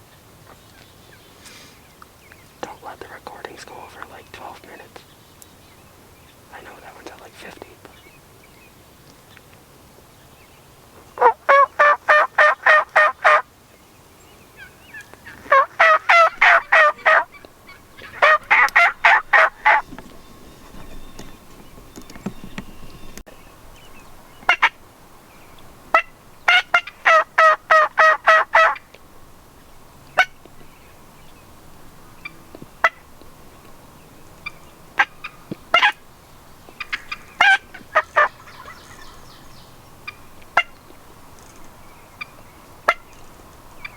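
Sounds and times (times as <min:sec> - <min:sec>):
turkey calling: 0:11.2 - 0:13.4, 0:14.6 - 0:23.2, 0:25.9 - 0:28.8, 0:36.7 - 0:40.8.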